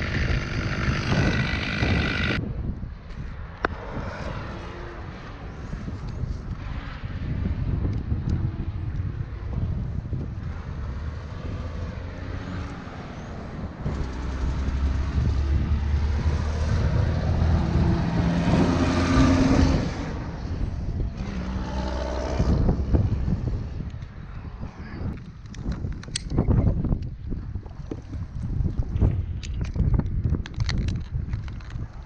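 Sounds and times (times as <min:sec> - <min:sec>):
engine running: 0:00.0 - 0:02.4, 0:09.0 - 0:24.0.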